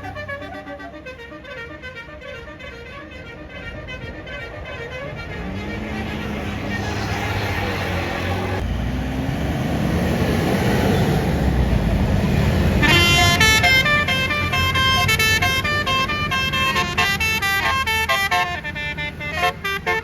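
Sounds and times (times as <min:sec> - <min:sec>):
multi-tone bus horn melody: 0:00.0 - 0:07.1, 0:12.8 - 0:20.0
bus engine running loudly: 0:00.0 - 0:20.0.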